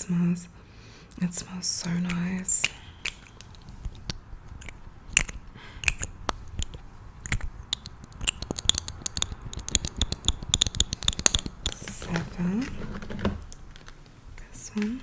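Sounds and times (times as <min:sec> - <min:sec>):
clicks and crackles of packaging: 0:02.1 - 0:14.2.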